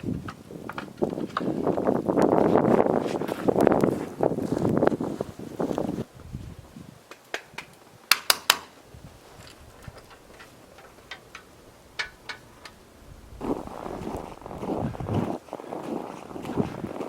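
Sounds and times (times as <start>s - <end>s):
wind on microphone: 0.0s - 7.8s, 8.8s - 10.7s, 11.6s - 17.0s
sharp clicks and knocks: 7.1s - 8.7s, 9.4s - 12.8s.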